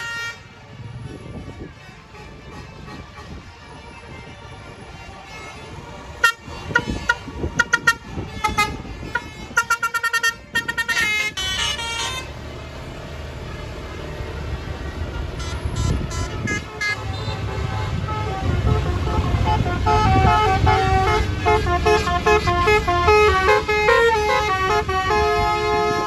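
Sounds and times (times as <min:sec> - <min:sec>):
multi-tone bus horn toots: 0:00.0 - 0:12.4, 0:14.2 - 0:26.0
low engine rumble: 0:00.0 - 0:26.0.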